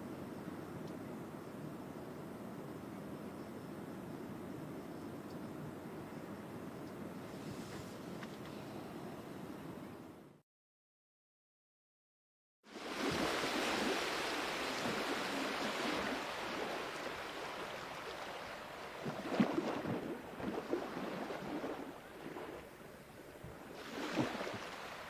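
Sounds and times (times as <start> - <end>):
sea waves washing in: 12.7 - 25.0
water splashes: 12.7 - 25.0.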